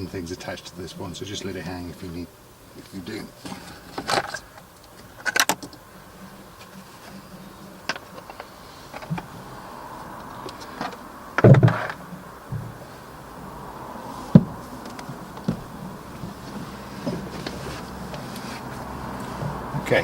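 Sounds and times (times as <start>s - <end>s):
plastic parts clicking and knocking: 3.4s - 5.8s, 10.6s - 12.7s
clattering bump: 10.2s - 20.0s.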